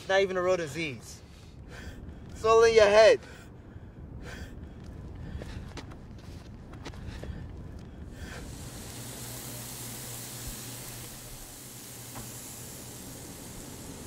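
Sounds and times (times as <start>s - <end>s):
steady hiss: 8.0s - 14.0s.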